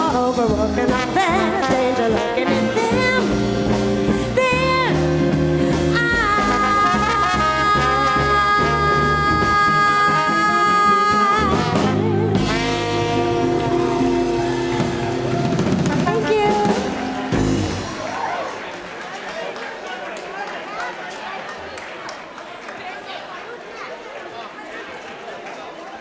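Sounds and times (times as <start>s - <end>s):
live swing band playing: 0.0s - 18.8s
long held horn notes: 1.2s - 18.5s.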